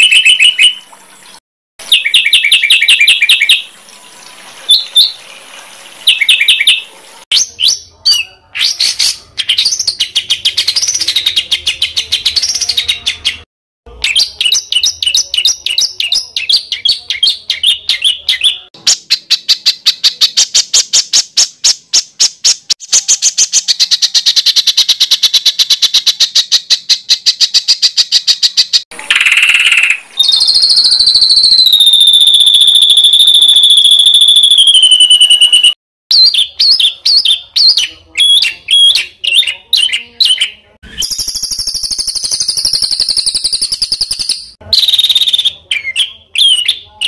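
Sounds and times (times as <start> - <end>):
fast repeated sharp bird notes: 0.0 - 0.8, 1.8 - 3.7, 8.6 - 39.0, 39.8 - 46.7
songbirds singing: 1.8 - 3.7.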